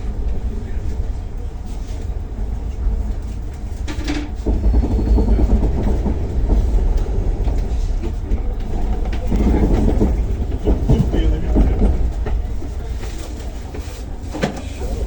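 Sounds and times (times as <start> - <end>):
train rumbling and rattling: 0.0 - 15.0.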